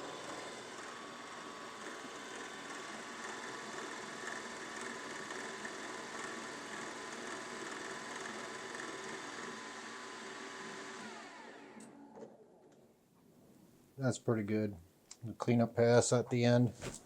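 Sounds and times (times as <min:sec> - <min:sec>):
milling machine cutting metal: 0:00.0 - 0:11.5.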